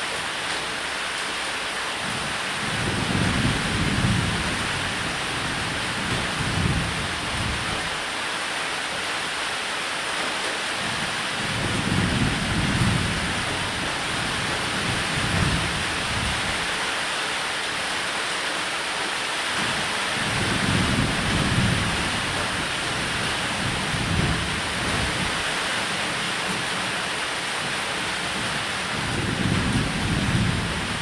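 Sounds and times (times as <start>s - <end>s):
heavy rain hissing: 0.0s - 31.0s
thunder rumbling: 28.3s - 31.0s.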